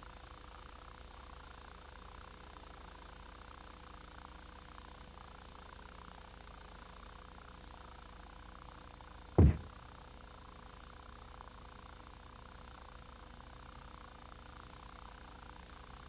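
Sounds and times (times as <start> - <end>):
heavy low thump: 9.4 - 9.7.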